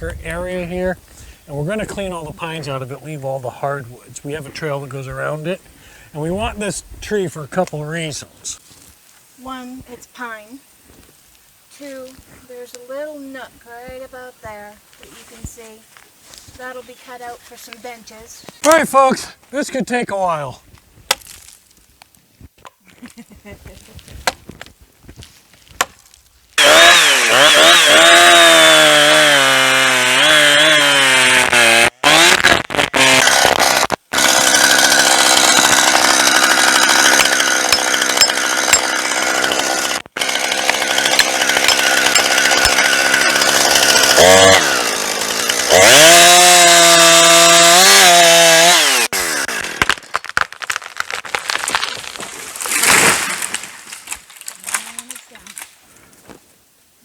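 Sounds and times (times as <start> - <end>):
chainsaw cutting wood: 18.6 - 19.1, 26.6 - 55.7.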